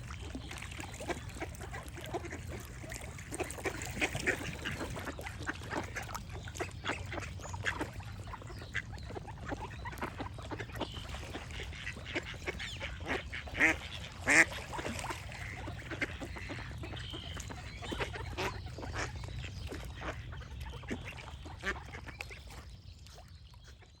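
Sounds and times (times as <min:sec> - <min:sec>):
ducks quacking: 0:00.2 - 0:22.7.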